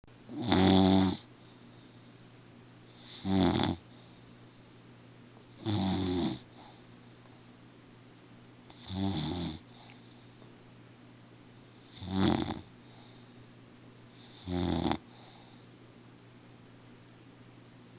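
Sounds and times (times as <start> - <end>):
slow snoring: 0.3 - 1.3, 3.0 - 3.8, 5.6 - 6.7, 8.7 - 10.0, 11.8 - 12.7, 14.2 - 15.4.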